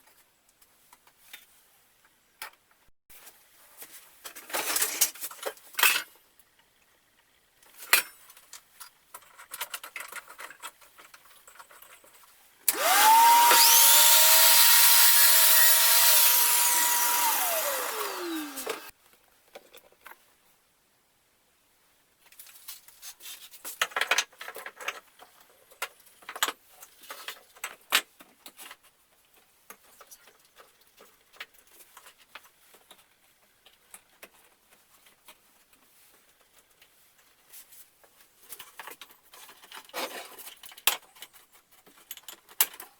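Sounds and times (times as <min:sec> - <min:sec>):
power tool motor whining: 0:12.7 - 0:18.9.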